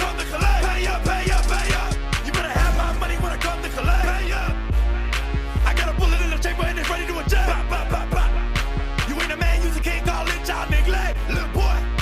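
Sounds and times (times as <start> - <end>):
hip hop music with heavy bass: 0.0 - 12.0.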